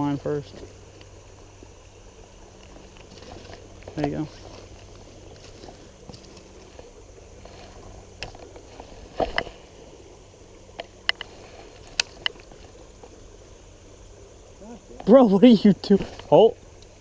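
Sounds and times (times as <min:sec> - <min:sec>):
shallow river water moving: 0:00.0 - 0:17.0.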